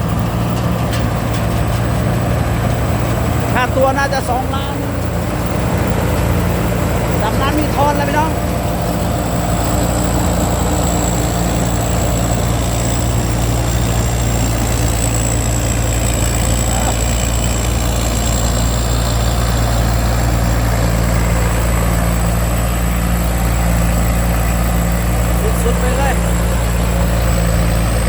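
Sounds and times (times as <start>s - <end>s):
combine harvester engine drone: 0.0s - 28.0s.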